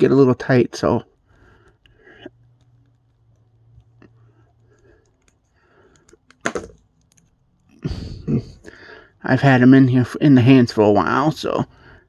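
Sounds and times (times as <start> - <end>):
plastic knock: 6.4 - 6.8.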